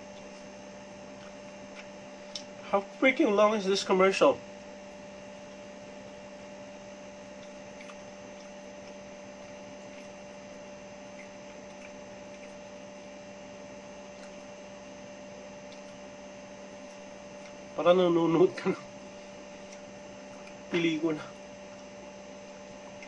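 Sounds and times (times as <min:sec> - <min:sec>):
electrical hum: 0:00.0 - 0:23.0.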